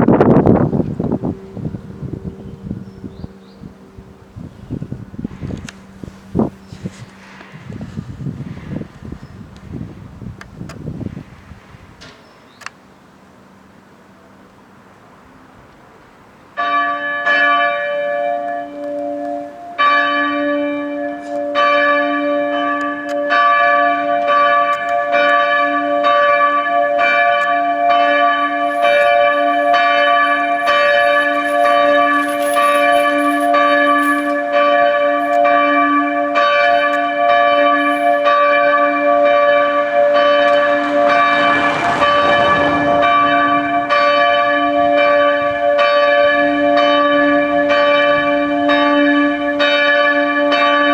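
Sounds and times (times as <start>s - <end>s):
church bells ringing: 0.0s - 8.8s, 16.5s - 50.9s
rush of noise: 39.7s - 44.8s.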